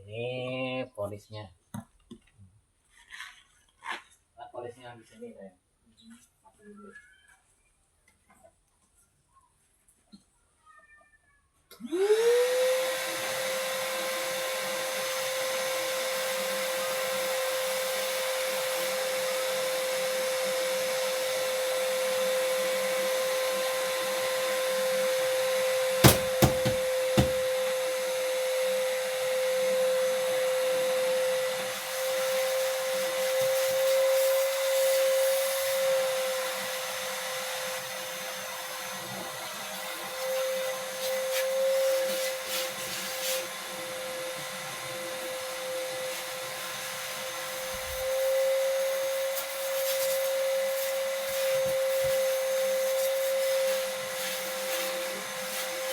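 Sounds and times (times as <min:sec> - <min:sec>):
polishing machine whining: 0:11.9 - 0:55.9
sharp knocks: 0:26.0 - 0:27.4.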